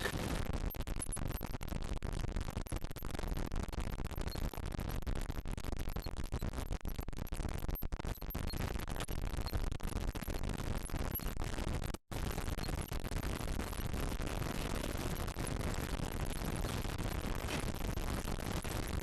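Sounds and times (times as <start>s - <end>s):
crackling static noise: 0.0s - 19.0s.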